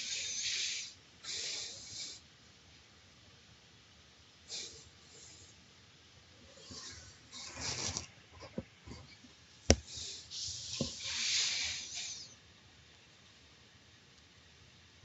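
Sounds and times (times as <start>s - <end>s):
breath-like hiss: 0.0s - 2.2s, 4.5s - 5.6s, 9.7s - 12.4s.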